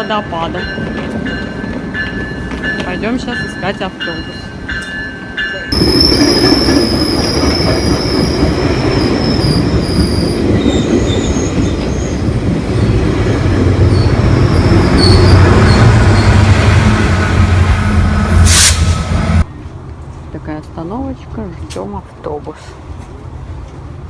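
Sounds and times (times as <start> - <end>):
heavy train rumble: 0.0 - 24.0
train wheels squealing: 5.8 - 12.2, 13.8 - 16.5.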